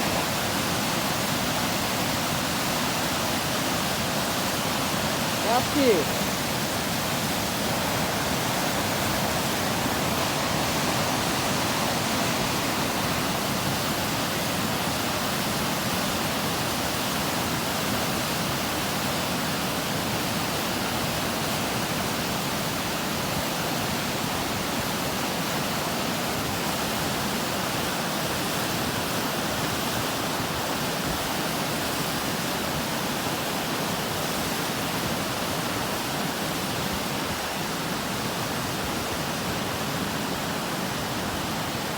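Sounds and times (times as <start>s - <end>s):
water rushing: 0.0s - 41.9s.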